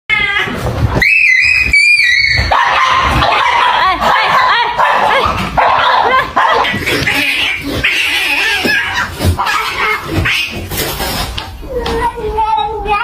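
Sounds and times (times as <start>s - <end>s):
cats screeching and yowling: 0.1s - 3.8s, 5.7s - 12.0s.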